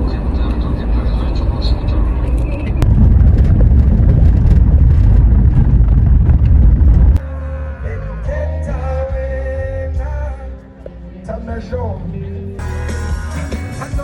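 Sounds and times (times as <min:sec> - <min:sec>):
loud low rumbling: 0:00.0 - 0:10.5
pop music: 0:12.6 - 0:14.0.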